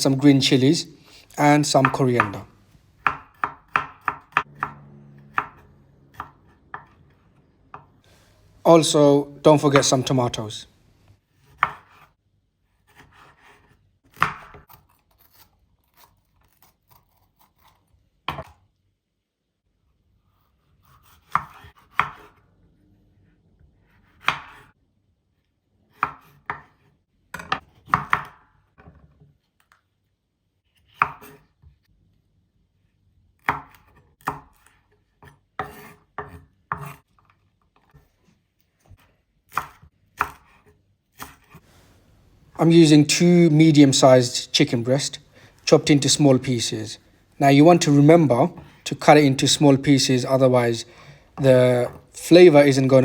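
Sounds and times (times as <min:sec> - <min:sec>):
knife chopping on cutting board: 0:01.8 - 0:02.4, 0:03.0 - 0:07.1, 0:11.4 - 0:12.1, 0:12.9 - 0:14.8, 0:20.8 - 0:22.4, 0:24.0 - 0:24.7, 0:25.9 - 0:28.4, 0:30.9 - 0:31.4, 0:33.4 - 0:37.0, 0:39.5 - 0:41.6.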